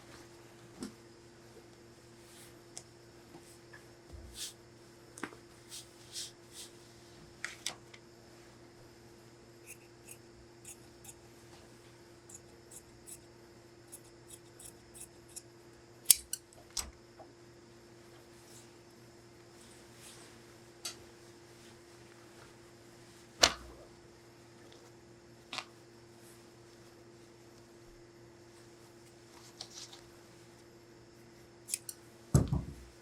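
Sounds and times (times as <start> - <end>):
shears snipping fabric: 9.6 - 11.2, 12.3 - 13.3, 13.9 - 15.5, 16.1 - 16.4, 31.7 - 32.0.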